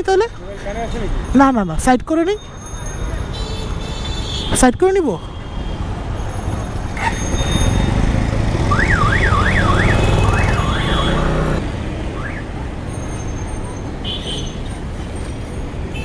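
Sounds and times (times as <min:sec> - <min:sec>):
electronic siren warbling: 0:07.4 - 0:11.6
motorcycle engine idling: 0:07.4 - 0:11.6.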